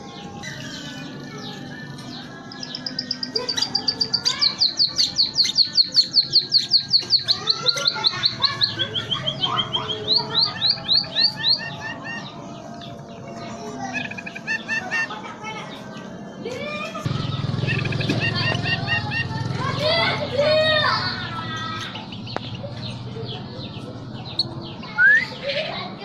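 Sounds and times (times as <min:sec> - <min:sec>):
bird singing high chirps: 0:00.0 - 0:20.0.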